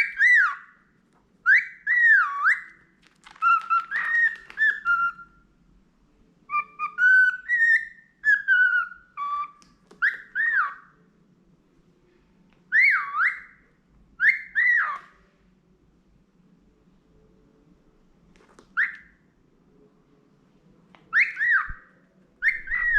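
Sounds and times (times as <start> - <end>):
budgerigar whistling a tune: 0.0 - 0.8, 1.4 - 2.8, 3.4 - 5.4, 6.5 - 11.0, 12.7 - 13.6, 14.2 - 15.1, 18.8 - 19.2, 21.1 - 22.9.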